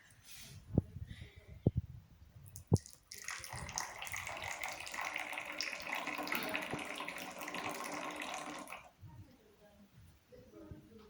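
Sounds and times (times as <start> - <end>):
liquid running in a stream: 3.1 - 8.9.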